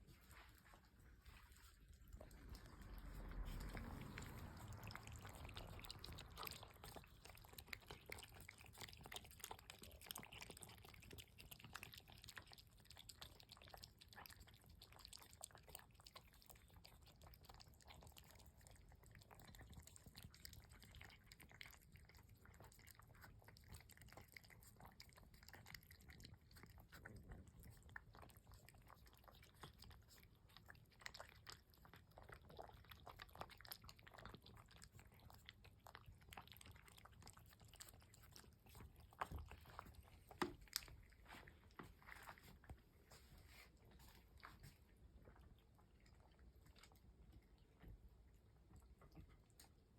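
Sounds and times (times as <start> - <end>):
cats crunching food: 0.0 - 49.9.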